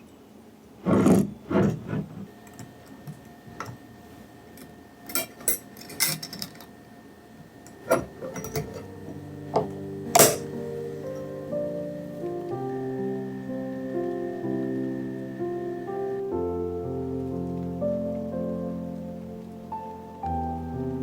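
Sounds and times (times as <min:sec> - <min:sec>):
soft music with held notes: 0:07.6 - 0:21.0
dishes and utensils clinking: 0:07.8 - 0:10.6.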